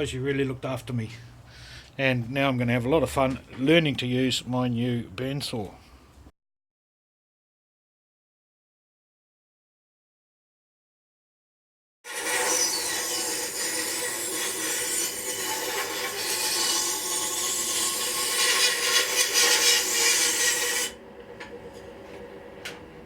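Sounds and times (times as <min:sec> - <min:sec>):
bandsaw cutting wood: 0:12.1 - 0:21.0.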